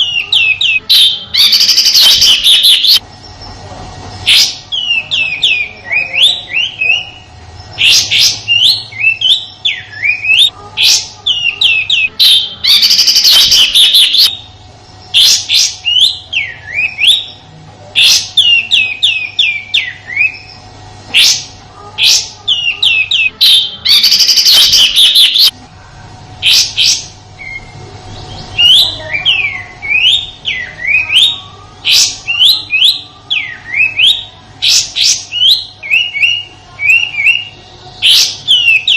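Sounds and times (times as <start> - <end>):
bird whistling notes: 0.0 - 3.5, 18.0 - 25.5.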